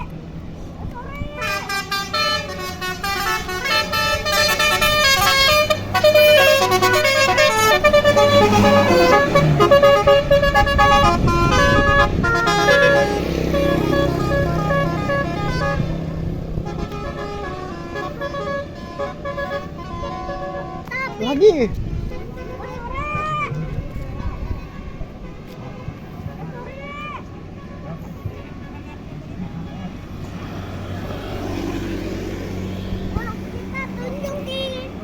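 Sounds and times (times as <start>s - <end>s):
bus engine running: 0.0s - 35.0s
bus musical horn tune: 1.4s - 26.4s.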